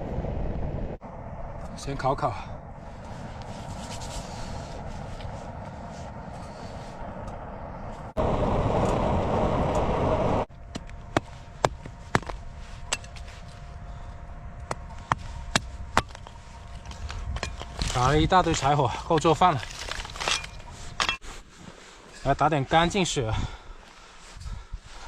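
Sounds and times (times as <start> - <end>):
small blower rushing: 2.7 - 17.3.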